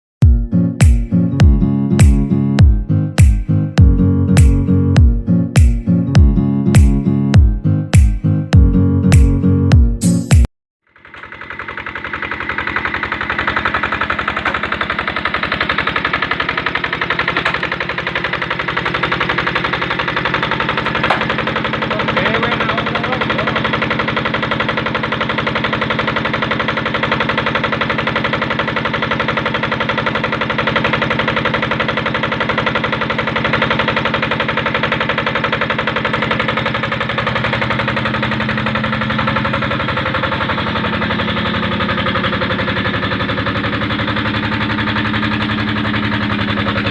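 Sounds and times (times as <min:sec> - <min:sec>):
brick-making machine running: 0:10.8 - 0:46.9.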